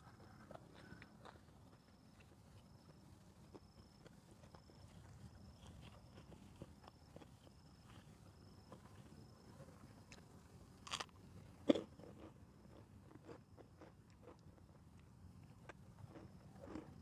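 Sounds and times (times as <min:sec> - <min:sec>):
quiet chewing: 0:00.0 - 0:17.0
crunchy bite: 0:10.8 - 0:14.8, 0:15.6 - 0:17.0.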